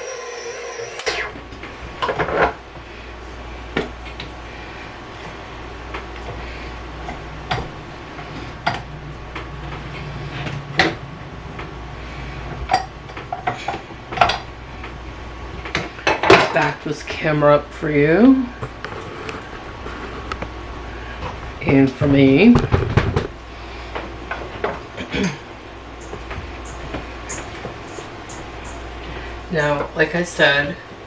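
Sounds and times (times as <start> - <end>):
steady whir: 0.0 - 12.8
utensils and dishes clinking: 26.0 - 29.1.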